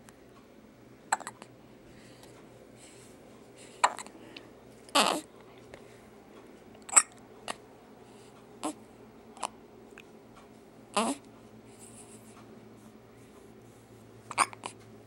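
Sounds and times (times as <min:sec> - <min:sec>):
person hiccuping: 0:01.1 - 0:01.4, 0:03.8 - 0:04.1, 0:05.0 - 0:05.2, 0:06.9 - 0:07.6, 0:14.3 - 0:14.8.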